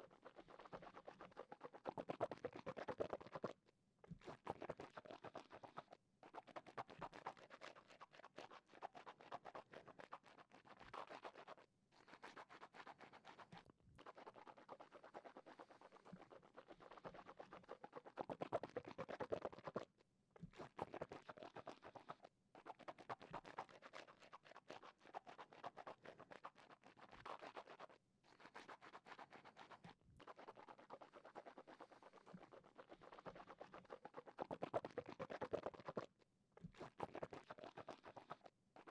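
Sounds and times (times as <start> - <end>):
wet mouth sounds: 0.0 - 38.9.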